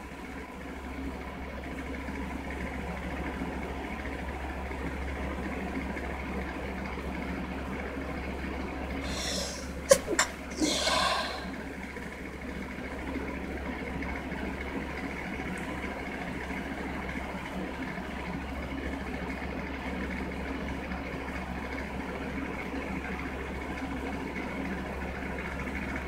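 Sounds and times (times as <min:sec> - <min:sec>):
person sneezing: 0:09.0 - 0:11.6.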